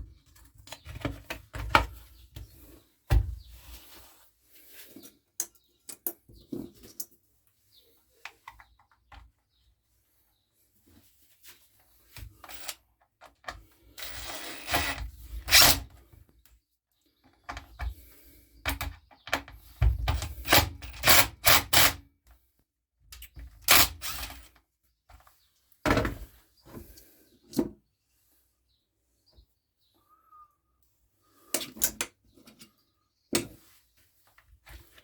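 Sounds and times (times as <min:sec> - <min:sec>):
knocks and clicks of parts handled: 0:05.0 - 0:07.2.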